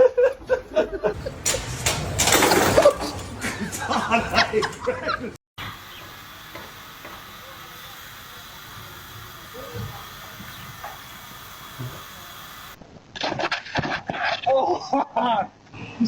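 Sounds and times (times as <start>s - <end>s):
background hiss: 1.2s - 12.8s.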